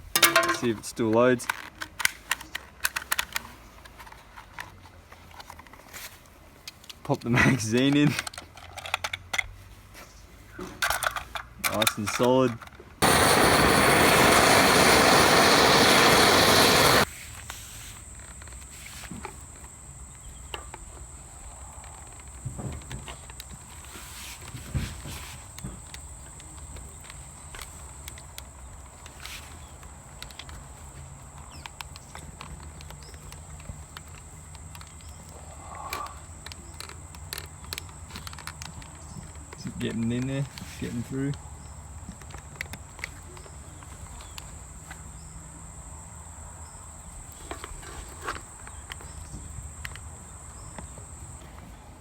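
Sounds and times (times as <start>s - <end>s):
faint clicks and crackles: 12.5s - 45.0s
gas torch flame hissing: 13.0s - 18.4s.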